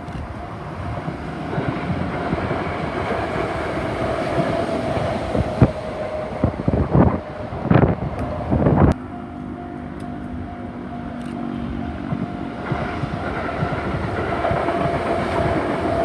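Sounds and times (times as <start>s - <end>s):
train wheels rumbling on rails: 0.0s - 16.0s
wheels clacking over rail joints: 0.0s - 16.0s.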